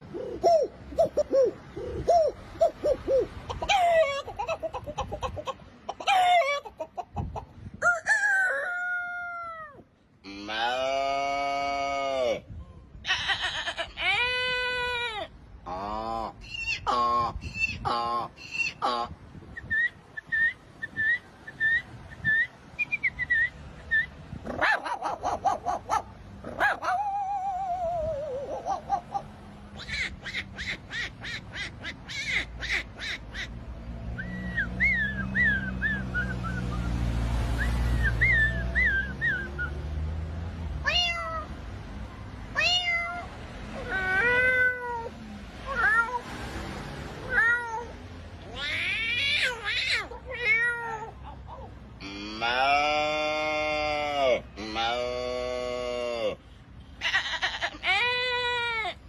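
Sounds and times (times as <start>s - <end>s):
cat meowing: 40.8s - 41.5s, 42.6s - 45.1s, 45.7s - 46.2s, 47.2s - 51.2s
person yelping like a dog: 52.3s - 56.4s
person howling: 52.4s - 56.4s.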